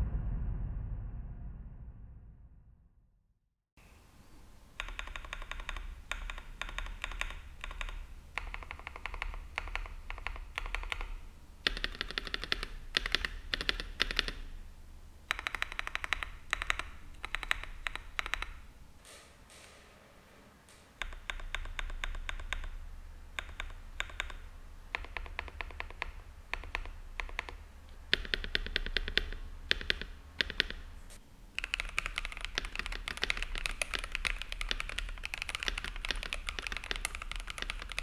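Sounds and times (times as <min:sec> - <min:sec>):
mechanical keyboard key clacks: 0:04.8 - 0:14.4, 0:15.3 - 0:18.6, 0:20.9 - 0:30.8, 0:31.6 - 0:38.0.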